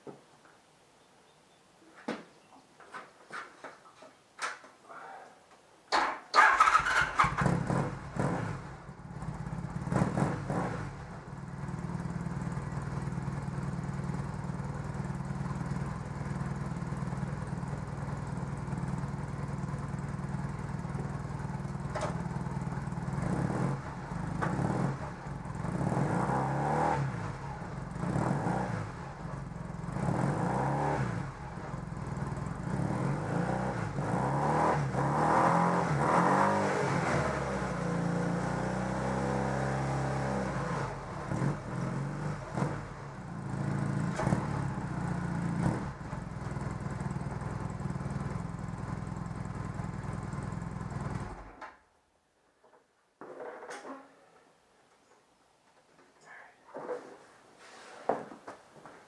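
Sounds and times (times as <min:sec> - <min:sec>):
motorcycle engine idling and revving: 0:06.4 - 0:51.6.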